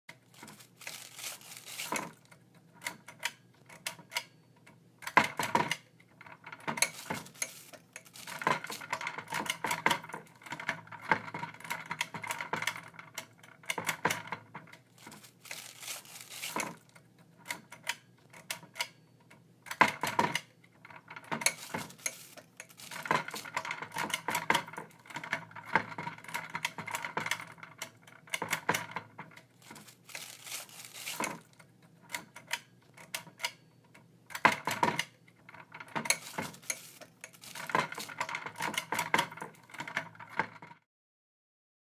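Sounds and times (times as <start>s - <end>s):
small hard objects clattering: 0.3s - 2.2s, 6.8s - 10.4s, 15.0s - 16.8s, 21.4s - 26.3s, 29.6s - 31.5s, 36.0s - 40.4s.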